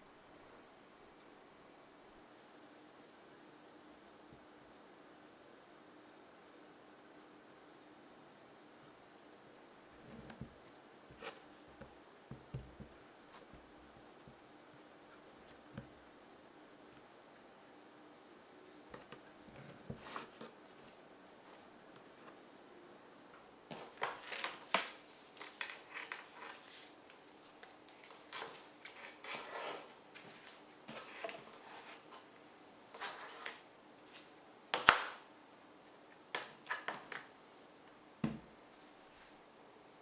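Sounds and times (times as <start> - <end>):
packaging rustles: 23.7 - 29.5.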